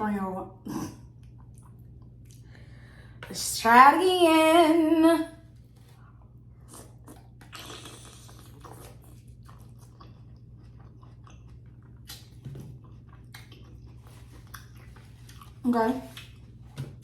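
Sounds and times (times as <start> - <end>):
person chewing: 5.8 - 17.0
wet mouth clicks and smacks: 12.0 - 12.4, 13.2 - 13.8.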